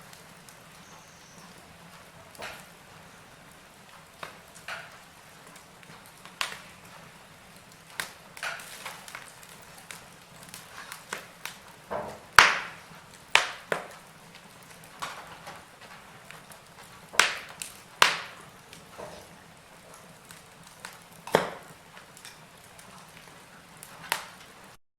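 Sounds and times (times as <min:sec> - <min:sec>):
firewood crackling: 0:00.0 - 0:24.8
loud wood pops: 0:07.9 - 0:14.0, 0:15.0 - 0:19.4, 0:20.8 - 0:22.4.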